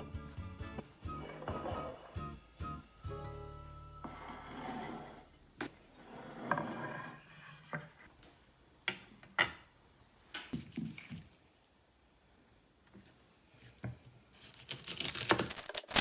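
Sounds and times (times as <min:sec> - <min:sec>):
rubbing or scraping: 0:01.1 - 0:02.2, 0:04.0 - 0:05.3.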